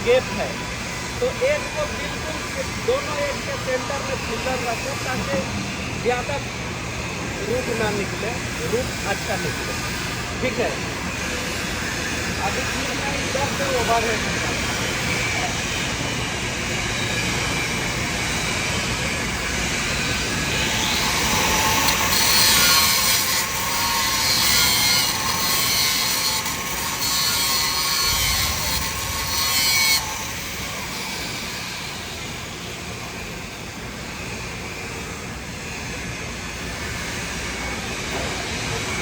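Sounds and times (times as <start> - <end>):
steady machine hum: 0.0 - 39.0
welding arc hissing: 7.4 - 33.5.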